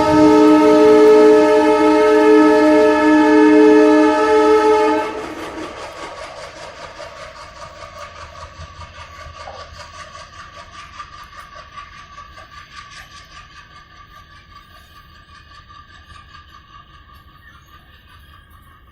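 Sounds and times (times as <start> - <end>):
train wagons rumbling on track: 0.0 - 18.9
wheel clatter over rail joints: 5.4 - 18.9.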